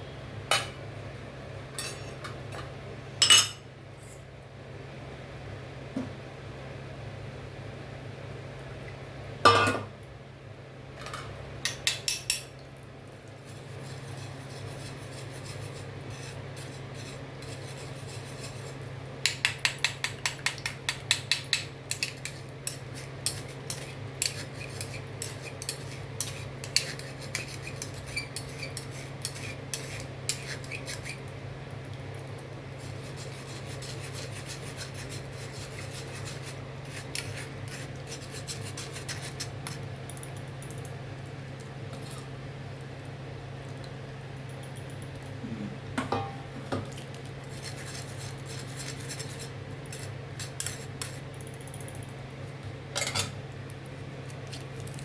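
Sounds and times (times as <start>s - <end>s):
steady low hum: 22.2s - 55.0s
metal utensil scraping cookware: 53.0s - 53.4s.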